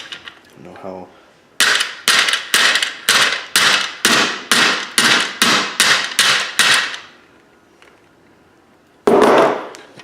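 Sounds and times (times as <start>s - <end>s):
hammer striking metal: 1.6s - 7.0s.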